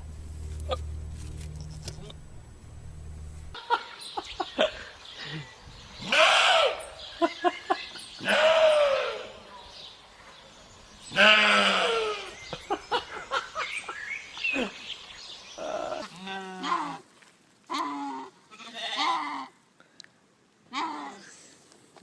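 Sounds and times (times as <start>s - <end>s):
goats bleating: 8.2s - 9.3s, 11.1s - 12.4s, 17.7s - 19.5s.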